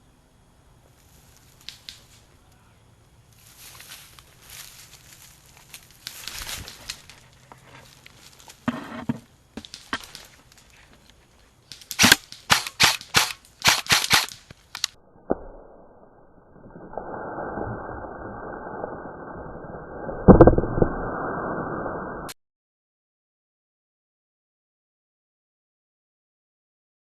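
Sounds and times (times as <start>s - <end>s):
airsoft guns firing: 11.9s - 14.9s.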